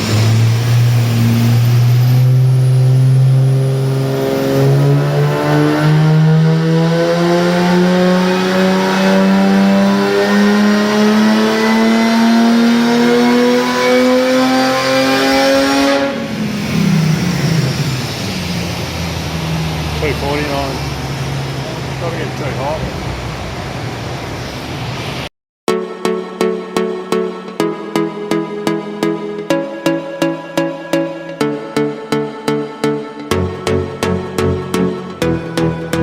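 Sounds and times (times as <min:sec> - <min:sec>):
car engine revving under load: 0:00.0 - 0:25.3.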